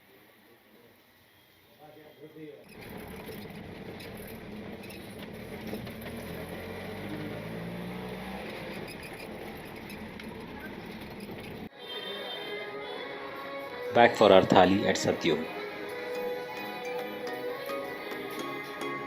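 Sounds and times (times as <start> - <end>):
traffic noise: 0.0 - 19.0
vehicle engine humming: 2.7 - 11.7.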